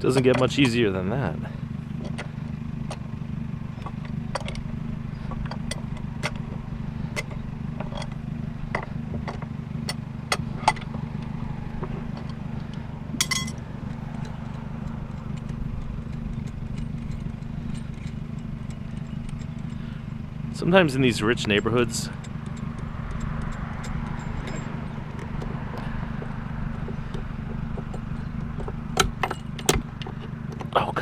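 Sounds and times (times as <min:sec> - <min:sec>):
low engine-like drone: 0:00.0 - 0:31.0
light metal clicks and clinks: 0:12.1 - 0:20.2, 0:21.0 - 0:30.8
sharp ringing metal clink: 0:13.2 - 0:13.6, 0:21.0 - 0:25.0.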